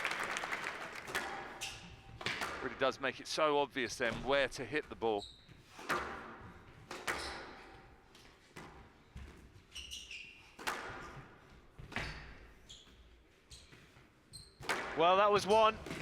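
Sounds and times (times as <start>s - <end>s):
squash ball hits: 1.1s - 1.6s, 2.2s - 2.7s, 10.6s - 11.2s, 14.6s - 15.0s
shoe squeaks on court floor: 5.1s - 6.0s, 7.1s - 7.8s, 9.1s - 11.2s, 11.8s - 14.7s.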